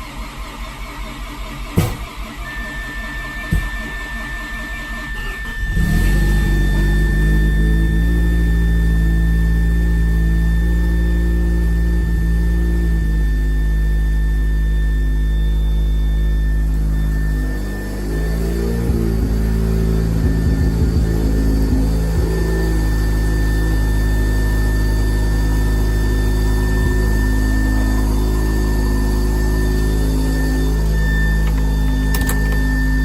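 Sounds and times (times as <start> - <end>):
rotary engine starting and idling: 0.0 - 33.0
thin high tone: 21.2 - 33.0.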